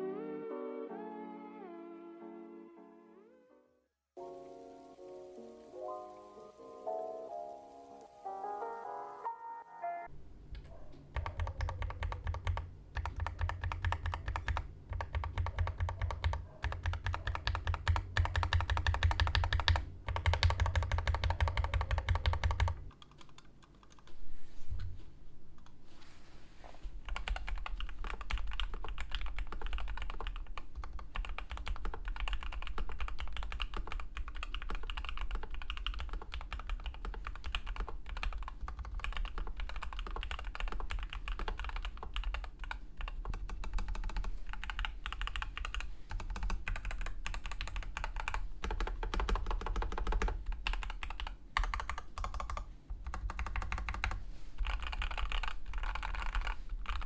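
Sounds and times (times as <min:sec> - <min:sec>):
rapid typing on mechanical keyboard: 0:11.1 - 0:24.1, 0:27.0 - 0:57.0.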